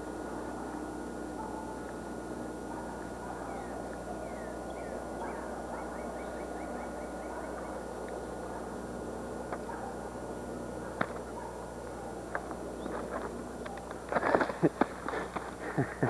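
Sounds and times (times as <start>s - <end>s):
hum and hiss: 0.0s - 16.0s
thin constant whine: 0.0s - 16.0s
bird chirping: 2.9s - 8.5s.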